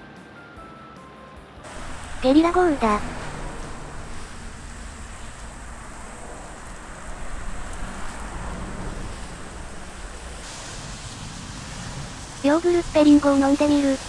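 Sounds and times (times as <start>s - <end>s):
low rumble: 1.7s - 12.4s
heavy rain downpour hissing: 1.7s - 14.0s.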